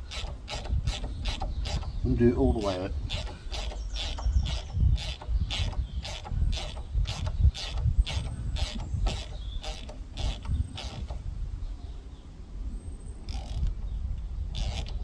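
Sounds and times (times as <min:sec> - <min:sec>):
ratchet wrench clicking: 0:00.0 - 0:01.9, 0:03.1 - 0:11.2.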